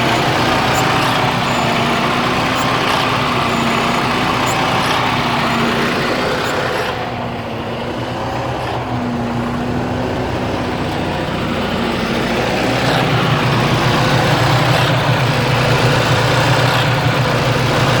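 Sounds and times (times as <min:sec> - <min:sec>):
diesel truck engine idling roughly: 0:00.0 - 0:18.0.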